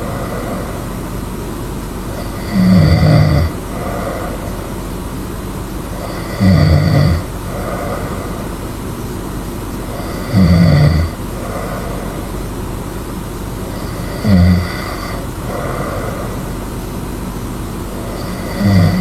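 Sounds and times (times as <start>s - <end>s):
person snoring: 0.0s - 1.0s, 2.1s - 4.8s, 5.9s - 8.7s, 9.9s - 12.5s, 13.6s - 16.6s, 18.0s - 19.0s
faint breath: 0.0s - 1.2s, 3.6s - 5.0s, 7.4s - 8.8s, 11.2s - 12.6s, 14.8s - 17.1s
steady low hum: 0.0s - 19.0s.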